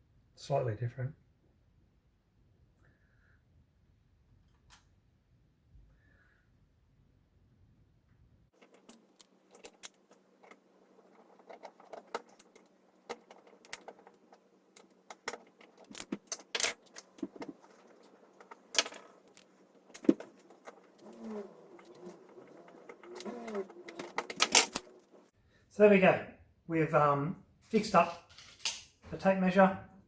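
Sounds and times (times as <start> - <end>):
screws and plastic case rattling: 8.5 - 25.3.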